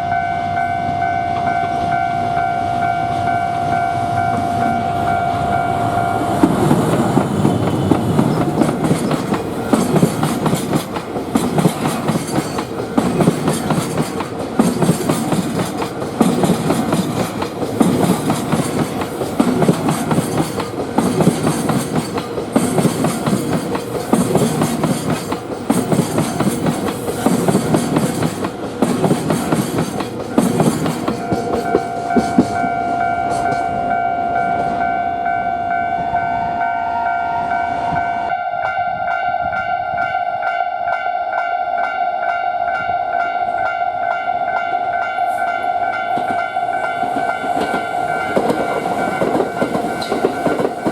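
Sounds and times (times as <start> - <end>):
train passing: 0.0 - 50.9
wheels beating over rail joints: 6.0 - 33.7, 46.0 - 50.9.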